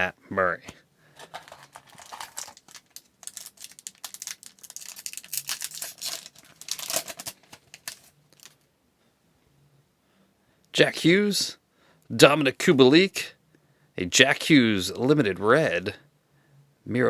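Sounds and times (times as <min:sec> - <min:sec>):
wrapper being torn and crinkled: 0:01.2 - 0:08.6.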